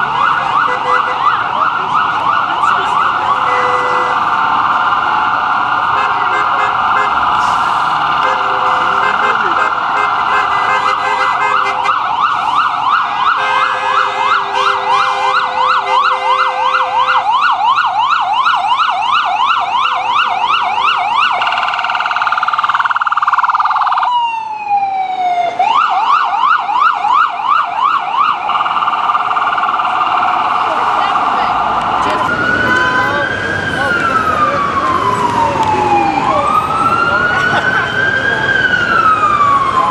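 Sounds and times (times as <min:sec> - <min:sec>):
ambulance siren yelp: 0:00.0 - 0:39.9.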